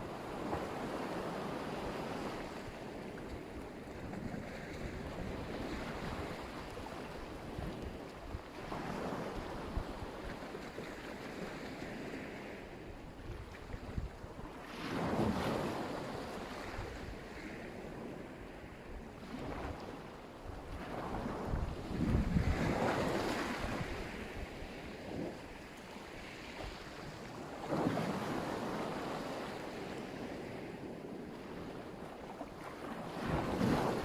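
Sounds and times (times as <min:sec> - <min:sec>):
waves breaking on shore: 0:00.0 - 0:34.0
wind buffeting microphone: 0:16.6 - 0:28.6.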